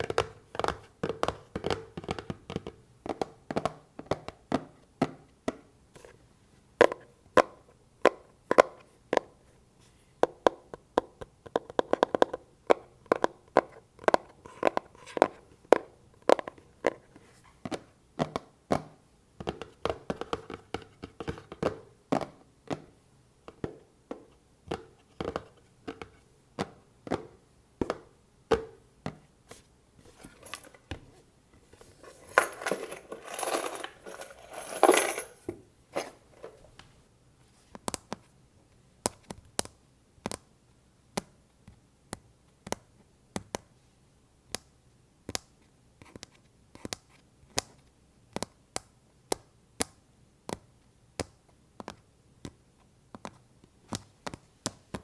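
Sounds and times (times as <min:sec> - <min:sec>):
scratching and rustling: 0:29.5 - 0:36.8.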